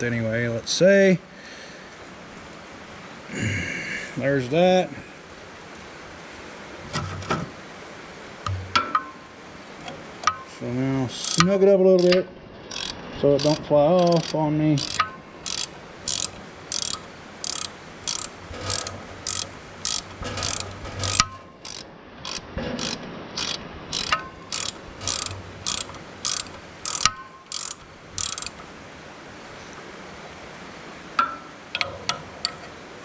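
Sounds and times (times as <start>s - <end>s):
ratchet wrench clicking: 11.2s - 28.7s.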